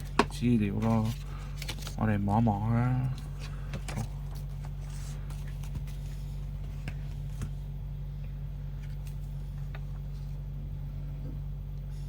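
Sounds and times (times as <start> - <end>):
hands rustling packaging: 0.0 - 2.3
low electrical hum: 0.0 - 12.0.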